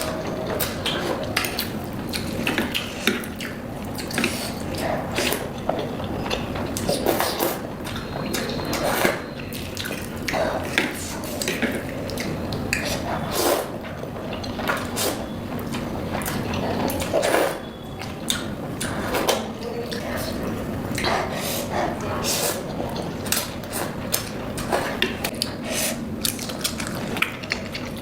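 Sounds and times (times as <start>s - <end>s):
slurping noodles: 0.0s - 13.8s, 14.4s - 17.7s, 18.8s - 26.1s.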